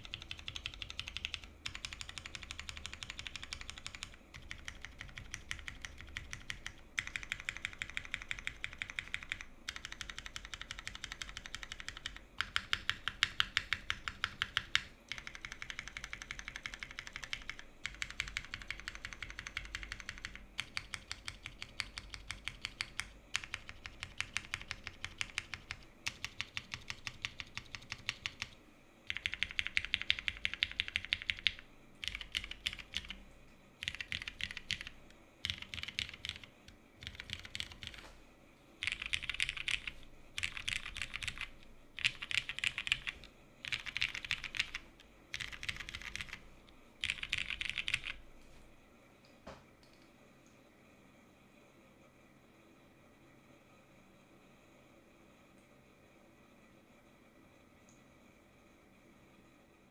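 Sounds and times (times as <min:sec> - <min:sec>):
mechanical keyboard typing: 0:00.0 - 0:33.2, 0:33.8 - 0:38.1, 0:38.8 - 0:46.4, 0:47.0 - 0:48.2.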